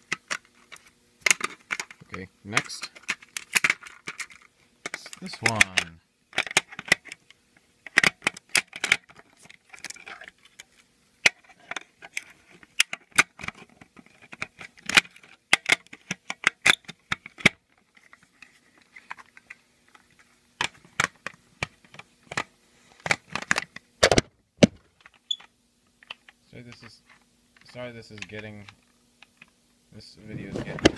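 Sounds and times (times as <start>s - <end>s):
plastic smoke alarm clicks and rattles: 2.8s - 7.2s, 7.8s - 10.7s, 11.3s - 17.6s.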